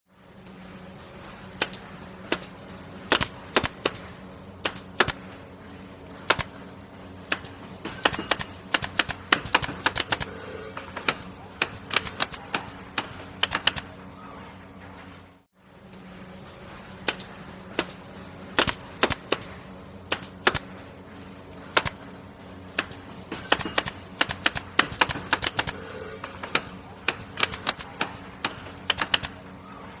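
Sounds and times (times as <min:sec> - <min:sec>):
steady low hum: 0:00.1 - 0:30.0
nail gun firing: 0:03.1 - 0:04.0, 0:04.6 - 0:05.2, 0:06.3 - 0:06.5, 0:07.3 - 0:10.3, 0:10.9 - 0:13.8, 0:18.6 - 0:19.5, 0:20.1 - 0:20.6, 0:22.8 - 0:29.4.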